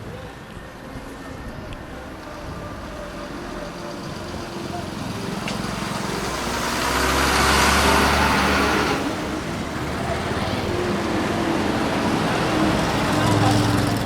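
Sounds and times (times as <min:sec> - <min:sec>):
busy road traffic: 0:00.0 - 0:14.0
vehicle passing close: 0:02.3 - 0:14.0.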